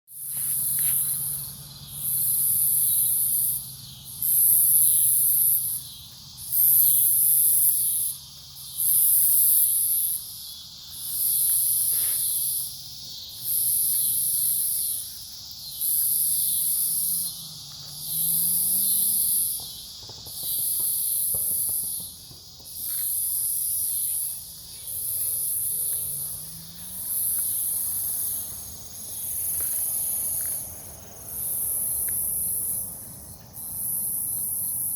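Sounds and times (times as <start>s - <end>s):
low insect chirring: 0.1s - 34.9s
high-pitched insect buzzing: 11.0s - 21.8s.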